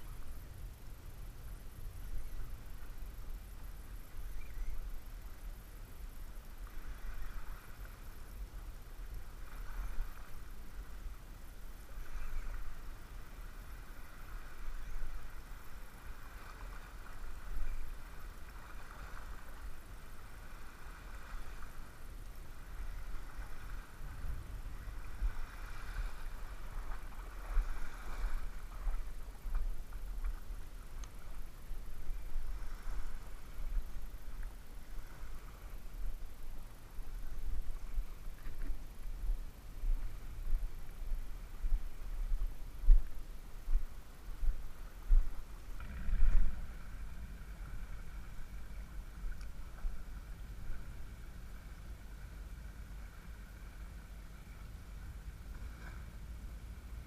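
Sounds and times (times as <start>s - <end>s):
steady outdoor wash: 0.0s - 57.0s
wind buffeting microphone: 9.0s - 53.9s.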